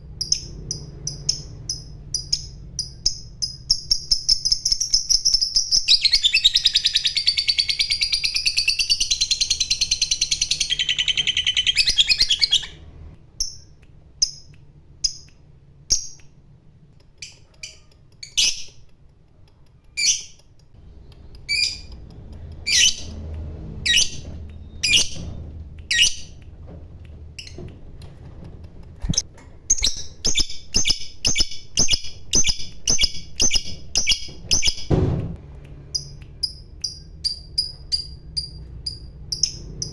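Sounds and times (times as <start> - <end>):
sharp bird chirps: 0.2 - 12.8, 23.9 - 26.4, 29.1 - 34.9, 36.0 - 39.9.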